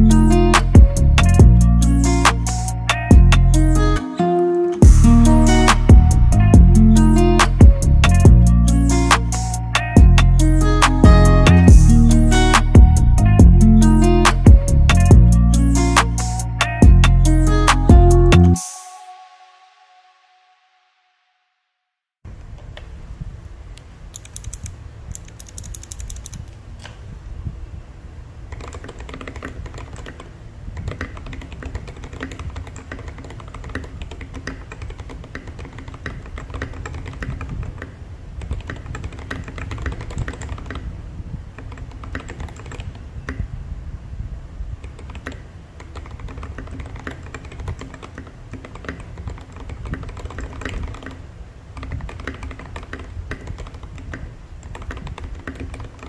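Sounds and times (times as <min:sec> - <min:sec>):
mechanical keyboard typing: 0:24.2 - 0:26.5, 0:28.5 - 0:37.7, 0:38.4 - 0:40.8, 0:41.6 - 0:43.0, 0:44.8 - 0:51.2, 0:51.8 - 0:56.0.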